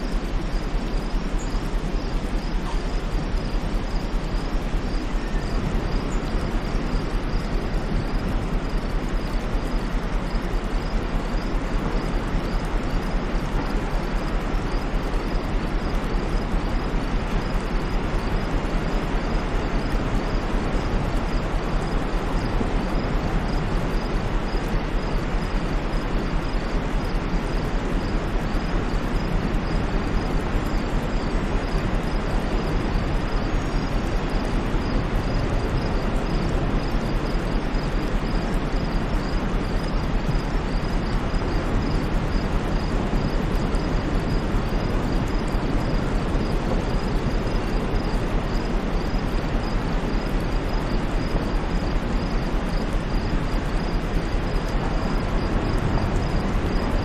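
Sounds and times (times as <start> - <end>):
steady white noise hiss: 0.0 - 57.0.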